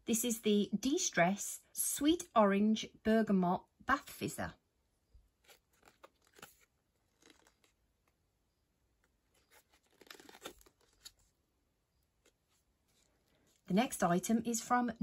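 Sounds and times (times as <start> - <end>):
packaging rustling and crinkling: 5.4 - 8.2, 9.1 - 11.4.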